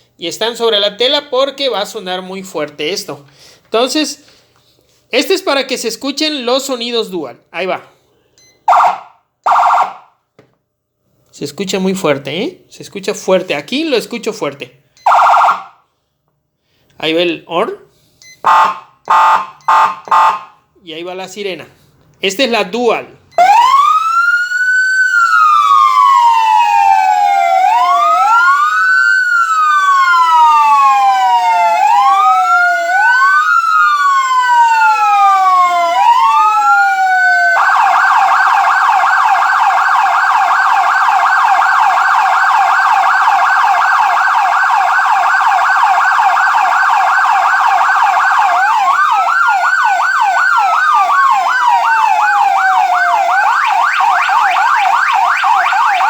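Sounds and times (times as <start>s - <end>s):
electronic siren wailing: 8.7s - 10.1s, 15.0s - 15.8s, 18.4s - 20.6s, 23.3s - 56.0s
siren fast warble: 8.7s - 10.1s, 15.0s - 15.8s, 18.4s - 20.5s, 23.4s - 56.0s.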